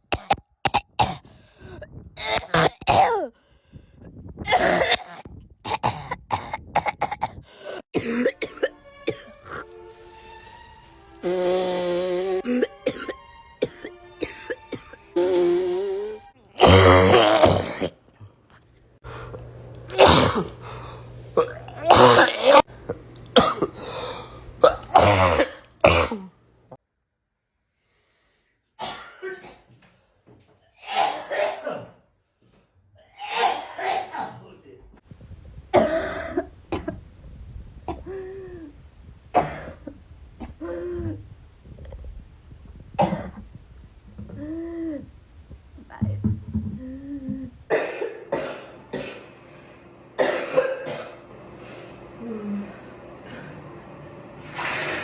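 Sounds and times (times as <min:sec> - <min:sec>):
person coughing: 0:00.0 - 0:01.2, 0:01.8 - 0:03.3, 0:04.5 - 0:09.6, 0:16.6 - 0:18.0, 0:19.1 - 0:26.3, 0:28.8 - 0:29.8, 0:30.8 - 0:32.0, 0:33.2 - 0:34.5, 0:47.7 - 0:49.2, 0:50.2 - 0:51.2.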